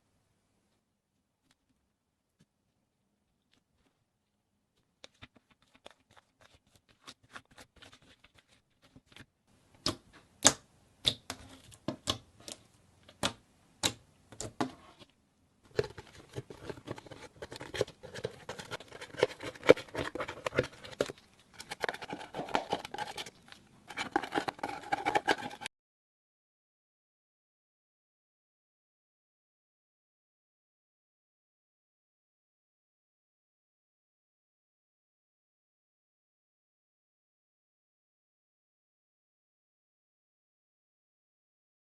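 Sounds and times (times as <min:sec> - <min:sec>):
slime squelching: 0:03.3 - 0:15.0, 0:15.7 - 0:25.7.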